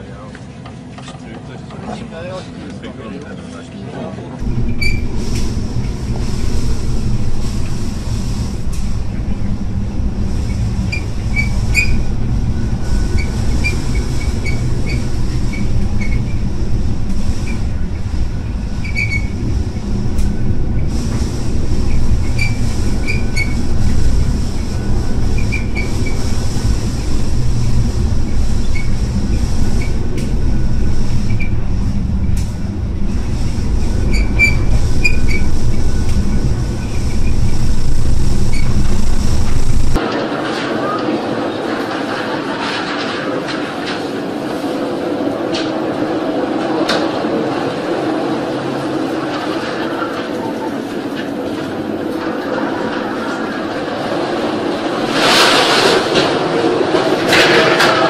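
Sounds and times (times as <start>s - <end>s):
low rumble inside a ship: 0.0s - 40.1s
high-pitched squeaks and creaks: 4.4s - 19.5s, 21.7s - 32.6s, 33.2s - 40.0s.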